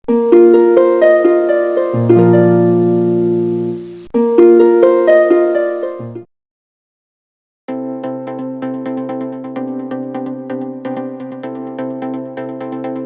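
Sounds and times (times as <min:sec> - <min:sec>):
plucked harp-like melody: 0:00.1 - 0:06.3.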